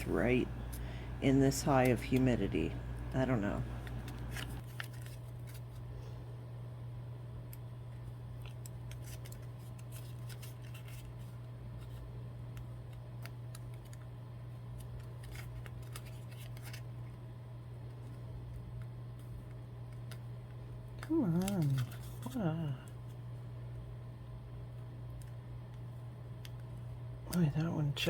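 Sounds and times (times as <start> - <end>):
steady low hum: 0.0 - 4.9.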